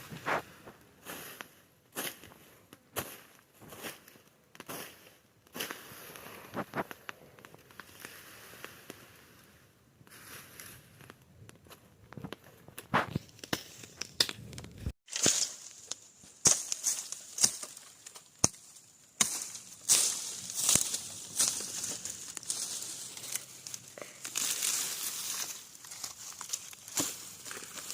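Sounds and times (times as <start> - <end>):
dry brush rustling and snapping: 10.1 - 27.9.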